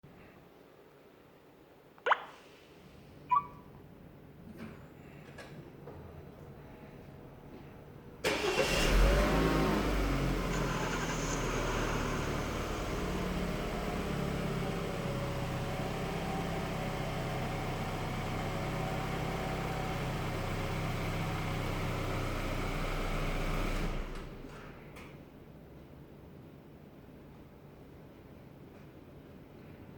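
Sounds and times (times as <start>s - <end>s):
car engine starting and idling: 8.2s - 24.8s.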